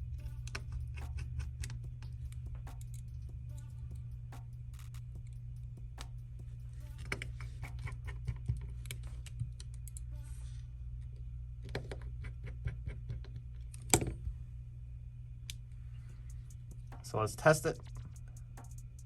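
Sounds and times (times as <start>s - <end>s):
low hum: 0.0s - 19.0s
small tools clicking and tapping: 0.2s - 3.7s, 6.9s - 10.1s.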